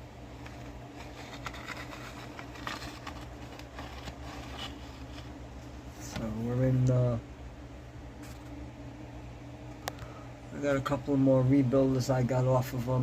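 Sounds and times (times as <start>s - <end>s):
steady low hum: 0.0s - 13.0s
plastic model car clicks and rustles: 0.4s - 5.2s.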